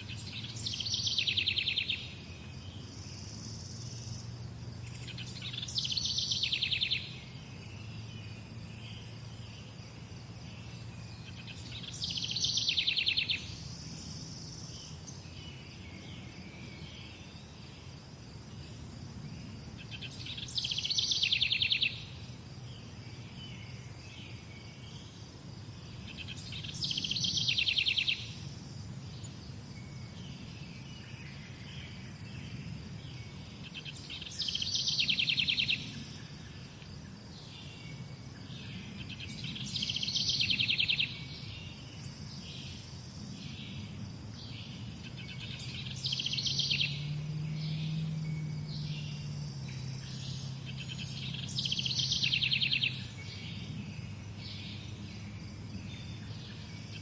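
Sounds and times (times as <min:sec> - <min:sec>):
songbird high trill: 0:00.0 - 0:08.2, 0:10.6 - 0:15.6, 0:19.8 - 0:22.2, 0:26.0 - 0:28.5, 0:33.3 - 0:36.4, 0:38.6 - 0:42.8, 0:44.6 - 0:53.6
faint bird chirps: 0:00.0 - 0:17.9, 0:18.5 - 0:57.0.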